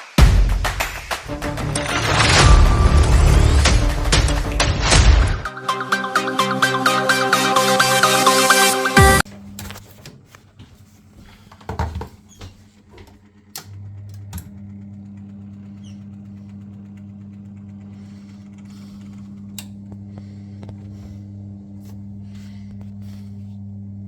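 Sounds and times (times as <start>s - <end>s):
heating pump humming: 6.9s - 24.0s.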